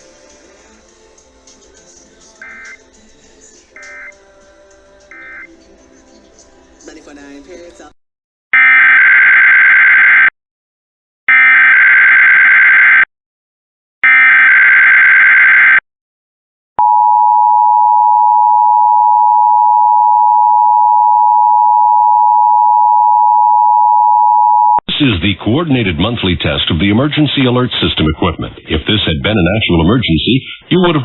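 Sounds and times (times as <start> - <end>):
two-tone attention signal: 2.4 - 2.8, 3.8 - 4.2, 5.1 - 5.5
warbling digital data tones: 2.4 - 2.8, 3.8 - 4.2, 5.1 - 5.5.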